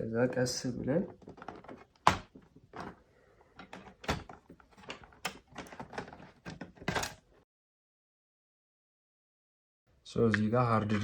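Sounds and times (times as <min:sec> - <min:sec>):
plastic case clicks and knocks: 0:01.1 - 0:03.0.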